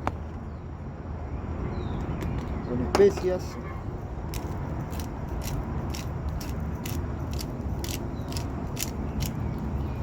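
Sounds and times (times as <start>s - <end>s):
salt grinder ticking: 4.4s - 9.4s.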